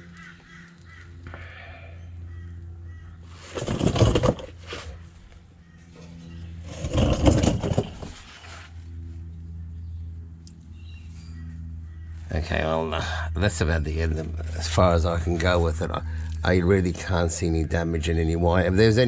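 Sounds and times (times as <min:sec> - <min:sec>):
steady low hum: 0:00.0 - 0:19.0
rough scraping: 0:03.3 - 0:09.0, 0:13.6 - 0:17.2.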